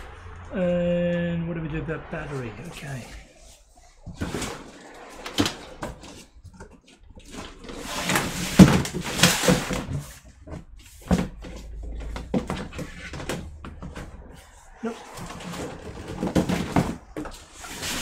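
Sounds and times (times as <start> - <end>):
rustling and clattering: 3.2 - 18.0
knocks and clicks of rummaging: 4.0 - 18.0.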